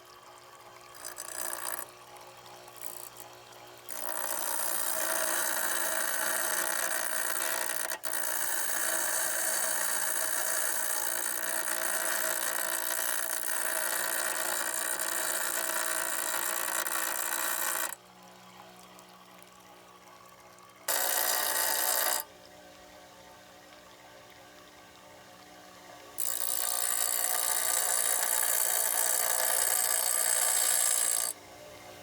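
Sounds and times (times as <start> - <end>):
blade sharpener grinding steel: 1.0 - 1.8, 3.9 - 18.0, 20.9 - 22.3, 26.2 - 31.4.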